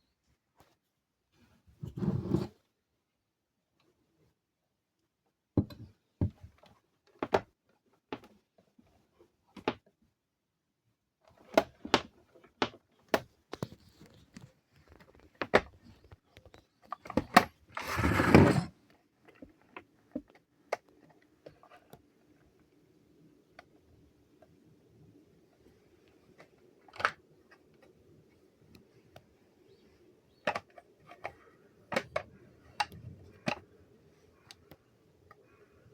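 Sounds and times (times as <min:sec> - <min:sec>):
loud noisy scrape: 0:17.8 - 0:18.7.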